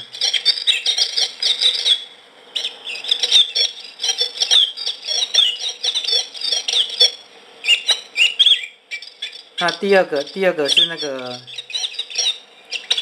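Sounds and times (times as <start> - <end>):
faint steady hum: 0.0 - 13.0
recorded birdsong chirps and trills: 0.0 - 13.0.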